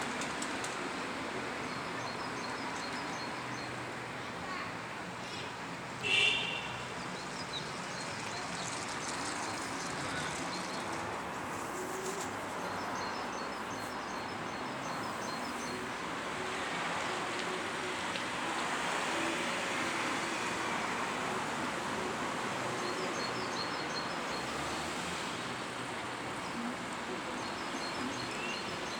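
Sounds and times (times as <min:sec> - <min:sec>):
steady background noise: 0:07.0 - 0:28.9.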